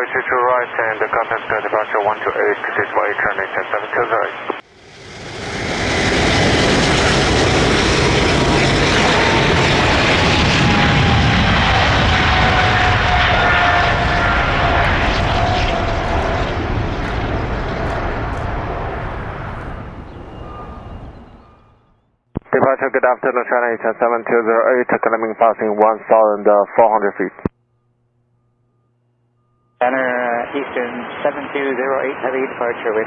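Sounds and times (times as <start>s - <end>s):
jet engine roar with whine: 4.6s - 22.0s.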